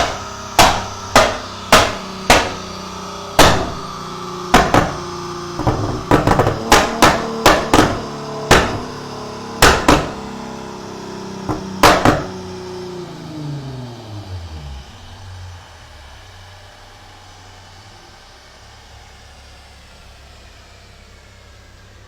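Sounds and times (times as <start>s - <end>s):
exhaust popping and banging: 0.0s - 10.4s, 11.4s - 12.4s
car engine running: 0.0s - 17.2s.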